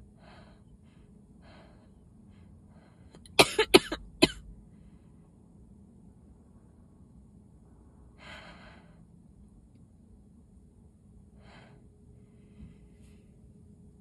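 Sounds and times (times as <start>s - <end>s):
faint breaths in: 0.0s - 3.4s, 8.0s - 9.2s, 11.3s - 13.5s.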